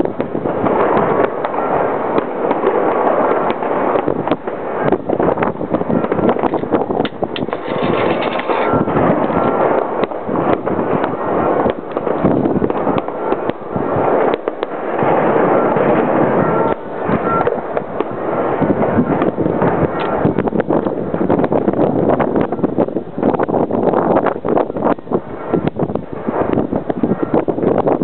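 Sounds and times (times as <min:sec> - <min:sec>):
sharp bangs and pops: 0:00.0 - 0:28.0.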